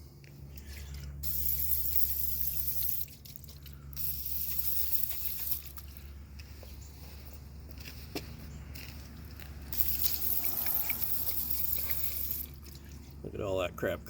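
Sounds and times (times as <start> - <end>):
steady low hum: 0.0 - 14.0
aerosol spray hissing: 9.7 - 12.6.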